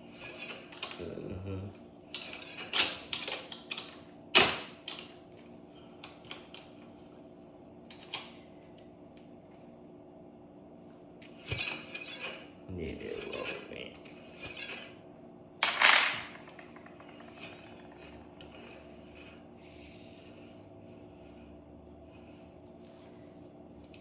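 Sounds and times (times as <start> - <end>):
steady low hum: 0.0 - 2.6, 5.2 - 24.0
metal tools clinking: 0.2 - 1.1, 15.6 - 18.8.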